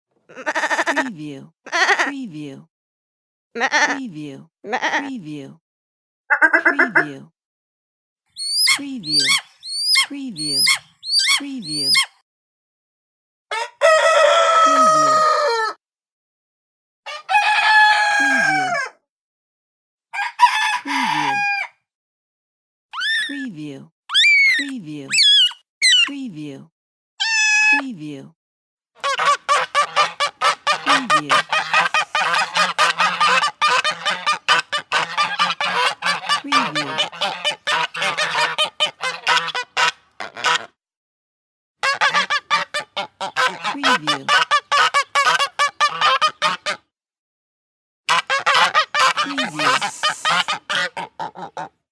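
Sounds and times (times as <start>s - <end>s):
rooster crowing: 13.5s - 15.8s, 17.1s - 18.9s, 20.1s - 21.7s
geese honking: 29.0s - 40.7s, 41.8s - 46.8s, 48.1s - 51.7s.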